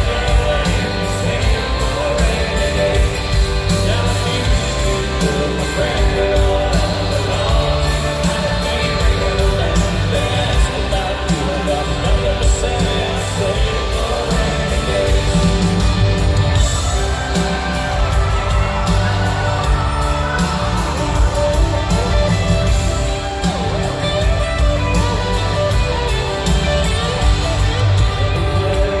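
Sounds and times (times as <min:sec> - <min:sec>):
person singing: 0:00.0 - 0:24.1
crowd noise: 0:00.0 - 0:29.0
live country band playing: 0:00.0 - 0:29.0
steady drum beat: 0:00.0 - 0:29.0.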